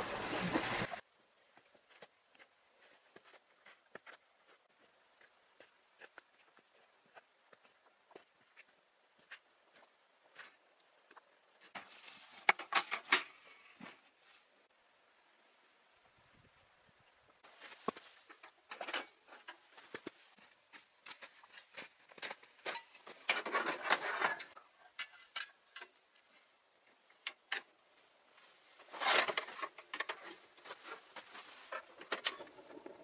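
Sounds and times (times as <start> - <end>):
rustling or crunching: 28.3 - 32.8.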